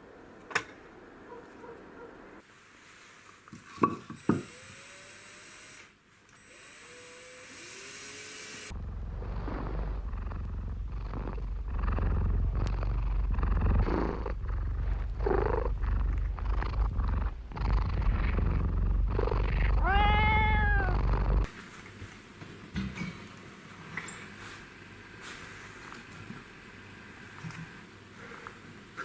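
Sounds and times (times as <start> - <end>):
animal low rumble: 8.7 - 21.5.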